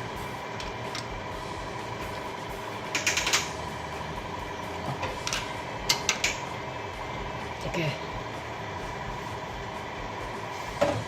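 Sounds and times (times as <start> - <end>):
steady hum: 0.0 - 11.0
ratchet wrench clicking: 2.9 - 3.5.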